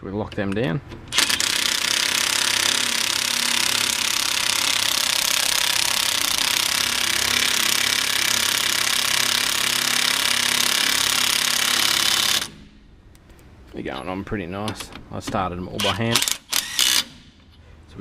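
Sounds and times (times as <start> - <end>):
impact wrench hammering: 1.1 - 12.6.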